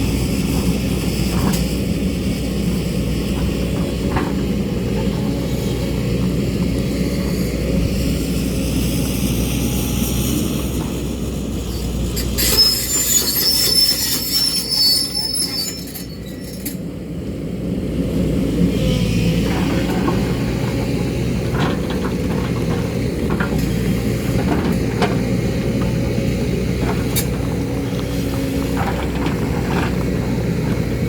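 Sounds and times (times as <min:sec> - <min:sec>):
excavator engine running under load: 0:00.0 - 0:12.2, 0:16.8 - 0:31.0
metallic squealing and scraping: 0:11.7 - 0:16.8.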